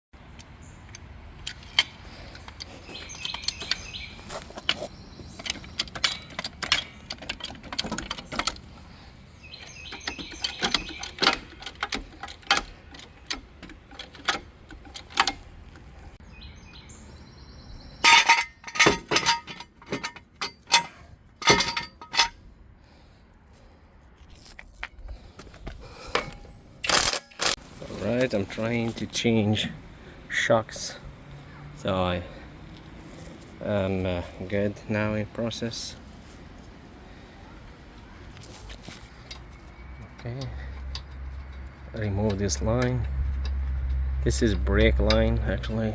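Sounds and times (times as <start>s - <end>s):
birds chirping: 0.3s - 22.3s, 24.9s - 26.8s
metallic clicks and clinks of tools: 0.4s - 8.6s, 9.9s - 15.9s, 18.0s - 22.4s, 26.1s - 27.6s, 38.4s - 45.9s.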